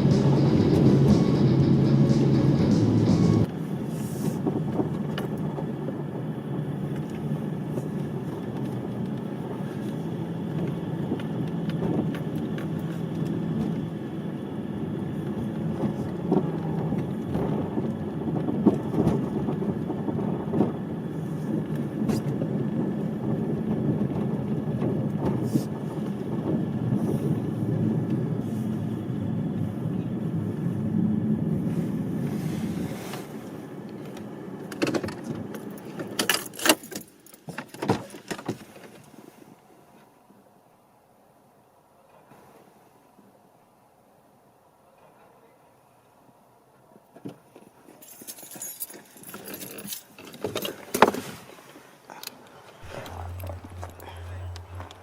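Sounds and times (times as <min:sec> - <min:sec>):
car rumbling on road: 0:00.0 - 0:03.5, 0:52.7 - 0:55.0.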